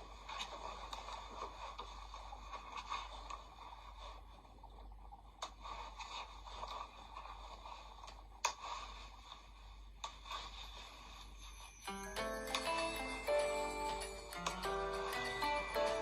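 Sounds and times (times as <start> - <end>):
faint rustling handling noise: 0.0 - 16.0.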